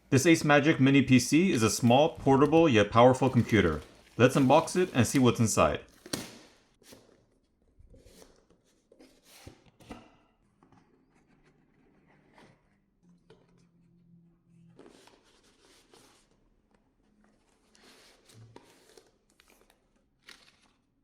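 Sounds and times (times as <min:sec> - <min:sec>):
cardboard box being unpacked: 0:01.5 - 0:06.2.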